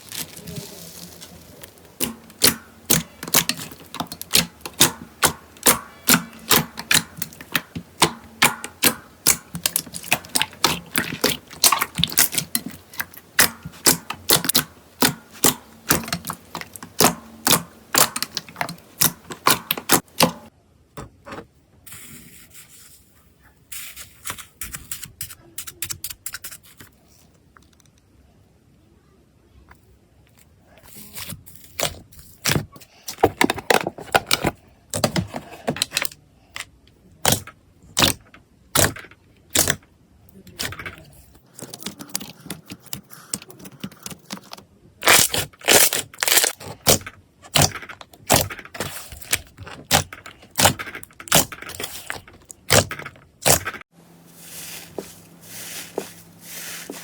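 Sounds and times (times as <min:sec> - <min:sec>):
slime crackling: 0:00.0 - 0:20.5, 0:40.5 - 0:53.7
slime clicking and popping: 0:02.0 - 0:20.5, 0:37.2 - 0:37.4.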